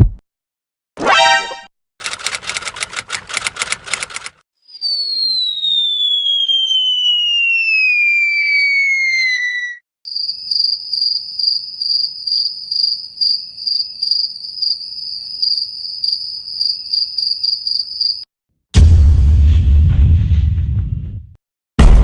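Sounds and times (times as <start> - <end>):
falling whistle: 4.6 - 9.8
cricket chirping: 10.1 - 18.3
loud boom: 18.8 - 22.0.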